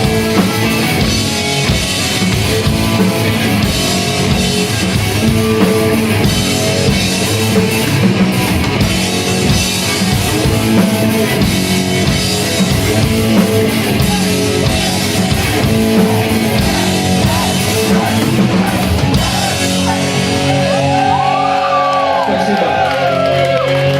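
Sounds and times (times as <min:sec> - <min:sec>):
distorted electric guitars: 0:00.0 - 0:23.9
drum kit: 0:00.0 - 0:23.9
rock band playing live: 0:00.0 - 0:23.9
high whoops: 0:20.5 - 0:23.9.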